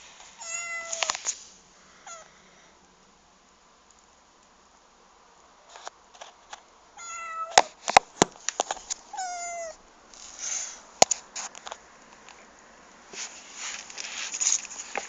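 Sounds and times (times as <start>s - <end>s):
cat meowing: 0.4s - 1.1s, 2.0s - 2.3s, 7.0s - 7.6s, 9.1s - 9.8s.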